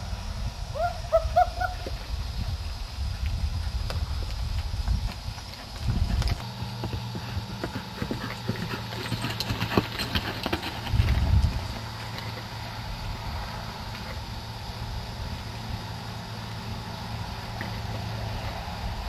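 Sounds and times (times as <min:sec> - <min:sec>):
horse hooves clip-clopping: 0:03.2 - 0:14.5, 0:16.6 - 0:19.0.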